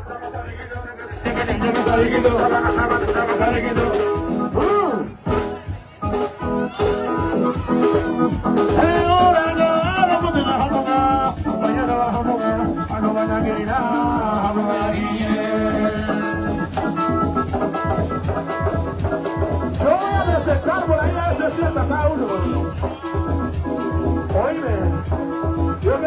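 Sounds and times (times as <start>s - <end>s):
man singing: 0.0s - 5.2s, 8.6s - 17.7s, 19.7s - 22.6s
latin party music: 0.0s - 26.0s.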